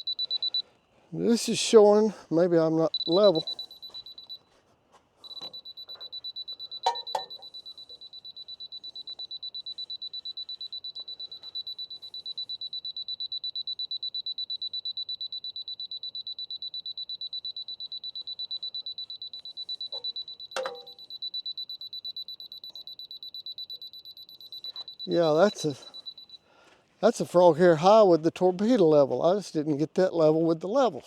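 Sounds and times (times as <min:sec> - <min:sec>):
receiver beeping rapidly: 0:00.0 - 0:00.6, 0:02.6 - 0:04.4, 0:05.2 - 0:26.4.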